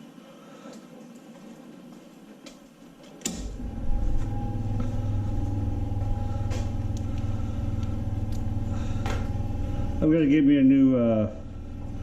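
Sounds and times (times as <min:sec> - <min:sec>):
air compressor motor humming: 0:03.3 - 0:12.0.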